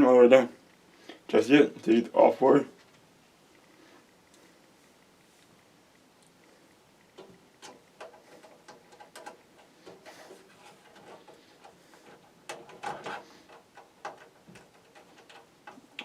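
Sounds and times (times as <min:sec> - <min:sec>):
small metallic clicks and taps: 0:07.0 - 0:16.0.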